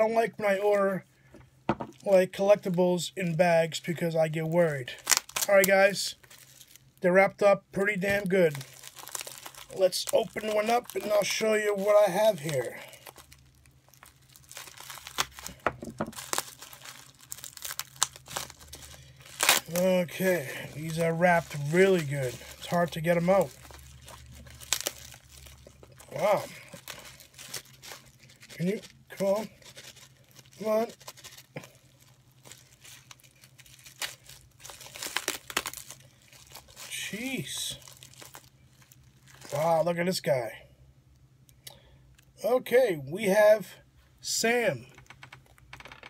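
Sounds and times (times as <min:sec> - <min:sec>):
packaging wrap crinkling and tearing: 0:03.3 - 0:39.9.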